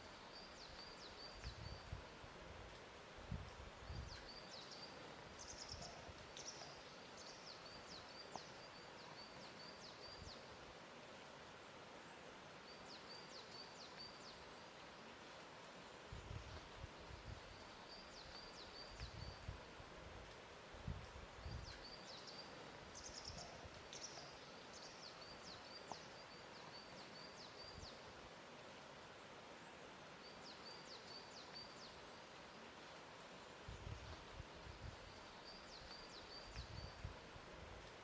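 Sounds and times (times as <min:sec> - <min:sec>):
soft steady hiss: 0:00.0 - 0:38.0
small birds chirping: 0:03.7 - 0:10.5, 0:21.3 - 0:28.1, 0:33.9 - 0:37.1.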